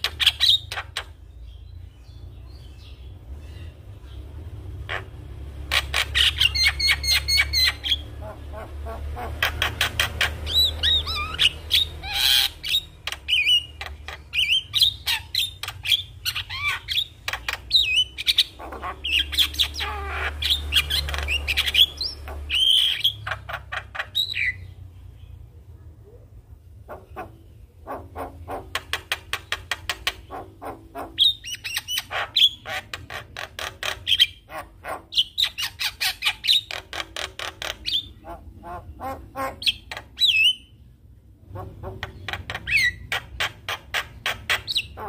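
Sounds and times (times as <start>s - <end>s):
myna bird singing: 0.0s - 45.0s.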